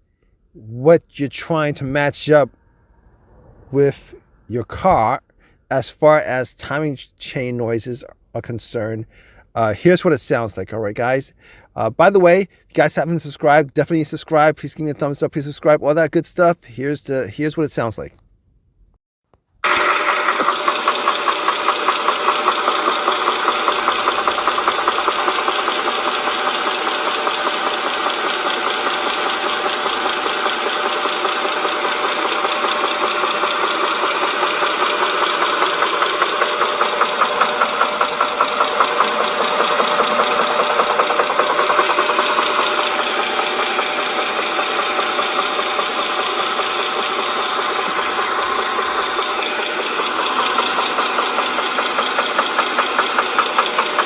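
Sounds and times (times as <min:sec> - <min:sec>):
car engine with knocking rattle: 0:19.6 - 0:54.0.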